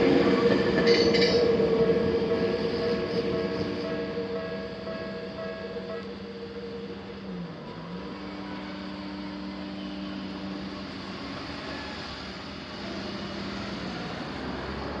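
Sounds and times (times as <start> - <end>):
low hum: 0.0 - 11.2
electric train rumbling: 0.0 - 15.0.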